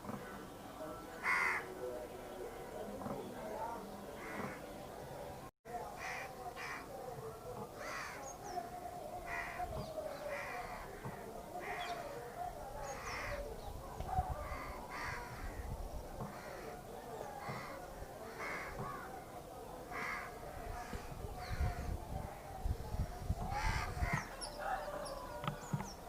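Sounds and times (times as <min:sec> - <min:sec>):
crows cawing: 0:01.2 - 0:01.7, 0:04.2 - 0:04.6, 0:06.0 - 0:06.9, 0:07.8 - 0:08.2, 0:09.3 - 0:09.7, 0:10.3 - 0:12.4, 0:14.4 - 0:15.6, 0:16.3 - 0:16.8, 0:17.4 - 0:19.1, 0:19.9 - 0:21.9, 0:23.5 - 0:25.0.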